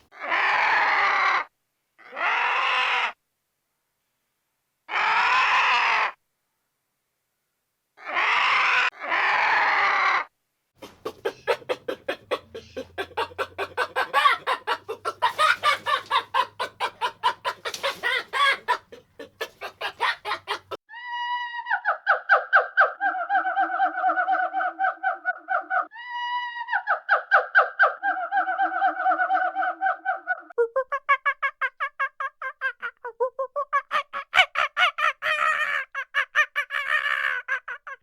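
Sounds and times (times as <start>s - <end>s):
chicken clucking: 10.8s - 20.8s.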